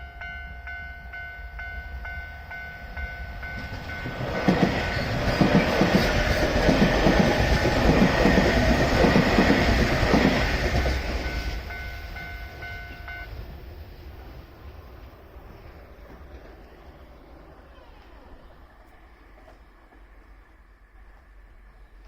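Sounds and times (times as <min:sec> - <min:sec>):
level crossing warning bell: 0:00.0 - 0:13.6
train wheels clattering over rail joints: 0:03.6 - 0:11.4.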